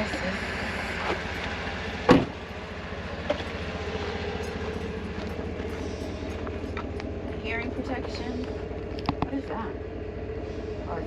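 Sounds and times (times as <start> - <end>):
vehicle engine idling: 0.0 - 11.0
loud sharp thump: 2.1 - 2.4.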